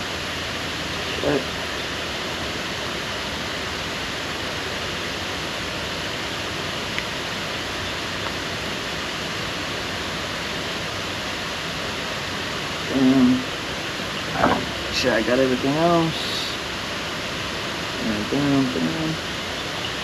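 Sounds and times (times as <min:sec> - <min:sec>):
steady rushing noise: 0:13.9 - 0:18.2.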